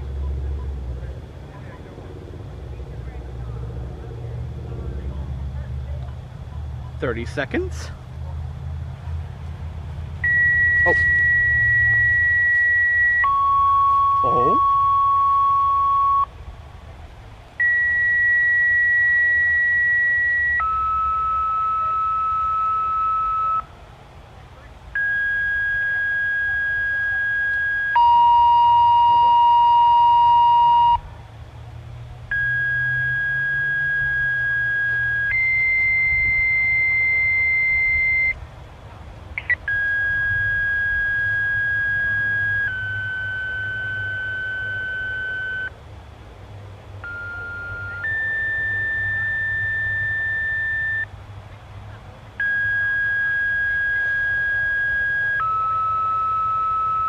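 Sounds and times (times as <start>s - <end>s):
electronic paging beeps: 10.2s - 16.3s, 17.6s - 23.7s, 25.0s - 31.0s, 32.3s - 38.4s, 39.4s - 45.7s, 47.0s - 51.1s, 52.4s - 57.0s.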